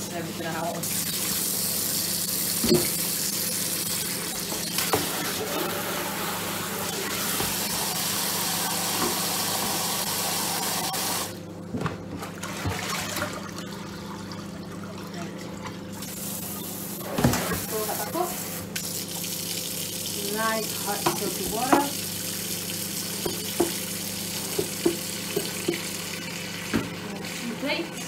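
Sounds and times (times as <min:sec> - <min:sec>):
tap running into sink: 0:08.9 - 0:09.8, 0:20.9 - 0:22.0, 0:23.2 - 0:25.9, 0:26.6 - 0:27.0
dishes clinking in sink: 0:21.0 - 0:22.0.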